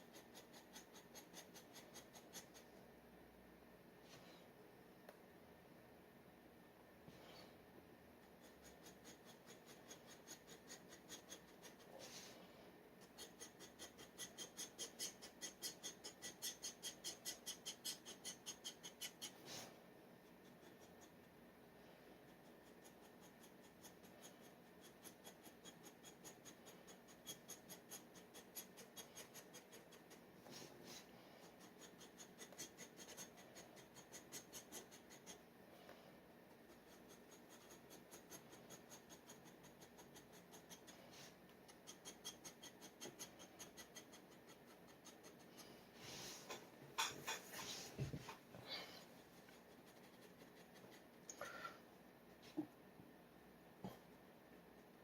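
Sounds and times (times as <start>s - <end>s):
dip pen scratching on paper: 0.0s - 2.7s, 8.2s - 12.3s, 13.0s - 21.3s, 22.2s - 35.4s, 36.6s - 48.4s, 49.4s - 51.2s.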